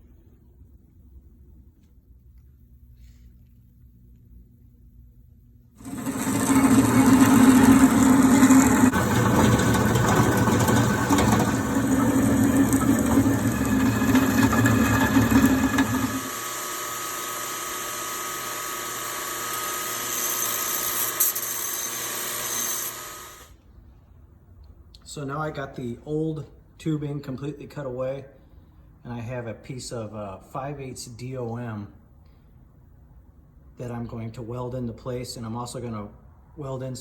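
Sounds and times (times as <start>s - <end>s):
power tool cutting steel: 5.8s - 23.5s.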